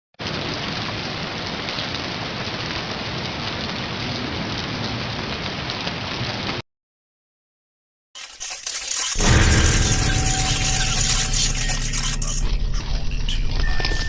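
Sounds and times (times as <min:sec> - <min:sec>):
rain pattering: 0:00.2 - 0:06.6.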